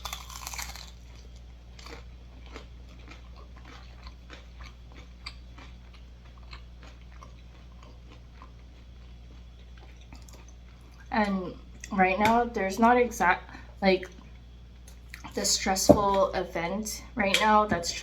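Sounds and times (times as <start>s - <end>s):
chewing food: 0.0s - 12.0s, 14.1s - 15.4s.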